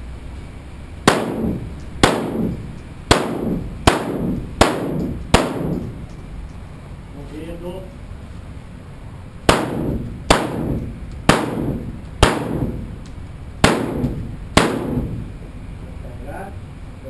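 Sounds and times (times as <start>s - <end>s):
gunshots with echo: 1.1s - 6.0s, 9.5s - 13.0s, 13.6s - 15.4s.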